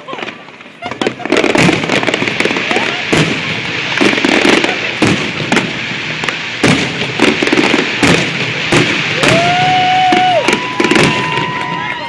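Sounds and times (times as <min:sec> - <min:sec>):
firework bangs: 0:00.0 - 0:12.0
firework crackling: 0:00.0 - 0:12.0.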